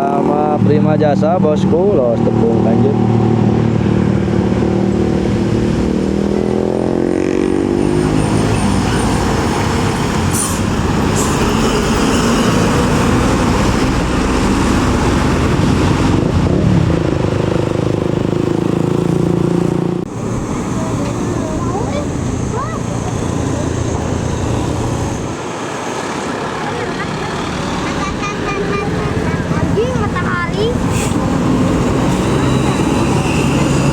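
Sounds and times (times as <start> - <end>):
bus engines passing: 0.0 - 33.9
short air hisses: 30.8 - 31.3.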